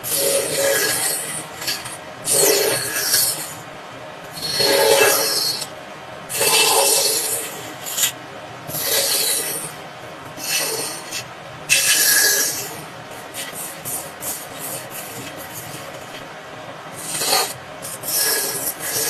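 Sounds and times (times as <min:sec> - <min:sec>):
hand tool rasping on wood: 0:00.0 - 0:03.5, 0:06.3 - 0:09.7, 0:10.4 - 0:16.0, 0:17.0 - 0:19.0.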